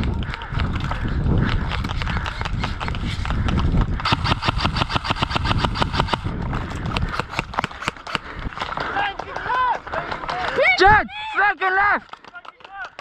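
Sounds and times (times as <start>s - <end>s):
wind on microphone: 0.0s - 8.6s
airsoft rifle full-auto burst: 4.0s - 6.3s
airsoft rifle single shots: 4.1s - 6.2s.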